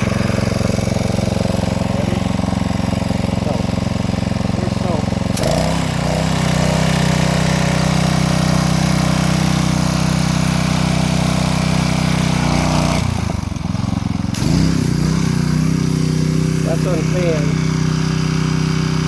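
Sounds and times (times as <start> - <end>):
pressure washer engine running: 0.0 - 19.0
hiss of water spray: 14.3 - 19.0.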